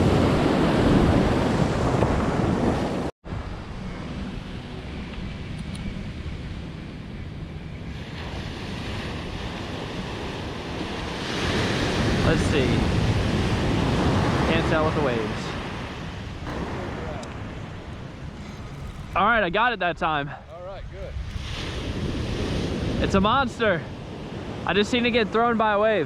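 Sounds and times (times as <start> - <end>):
wind buffeting microphone: 0.0 - 25.2
ocean surf breaking: 8.0 - 25.4.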